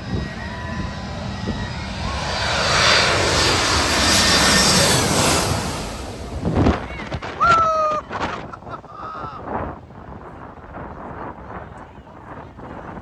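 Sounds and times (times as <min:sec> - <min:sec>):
jet airliner passing overhead: 0:00.0 - 0:08.9.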